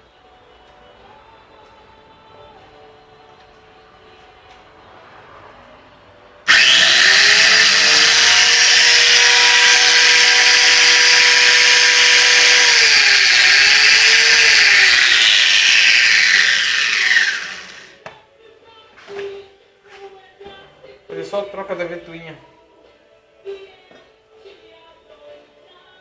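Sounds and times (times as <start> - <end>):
electric motor high whine: 6.5 - 18.0.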